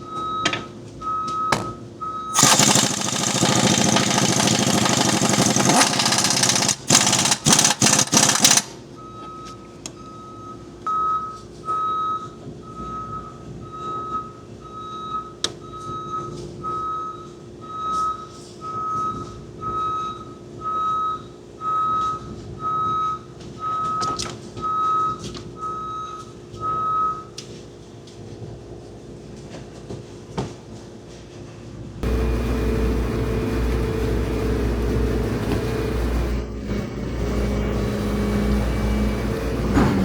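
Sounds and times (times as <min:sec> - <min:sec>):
electronic warning beeps: 0:09.0 - 0:27.3
low hum: 0:32.0 - 0:39.7.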